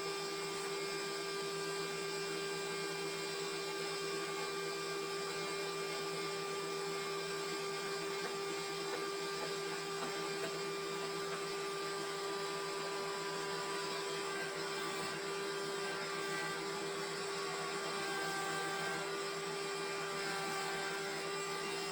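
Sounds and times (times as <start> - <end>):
sawmill machinery hum and whine: 0.0 - 21.9.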